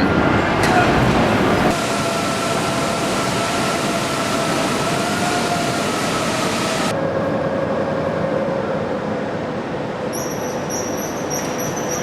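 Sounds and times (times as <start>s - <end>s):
dense machinery hiss: 1.7s - 6.9s.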